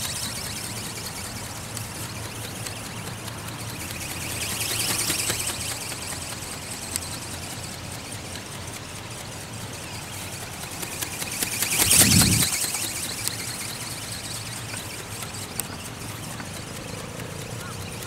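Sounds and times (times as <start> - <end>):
small electric motor buzzing: 0.0 - 18.0
wind noise on microphone: 11.7 - 12.7.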